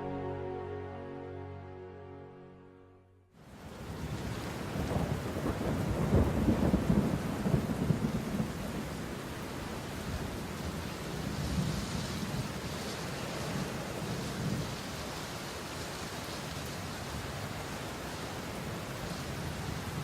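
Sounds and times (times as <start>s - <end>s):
steady rain hiss: 3.4s - 20.0s
thunder rumbling: 3.9s - 12.6s.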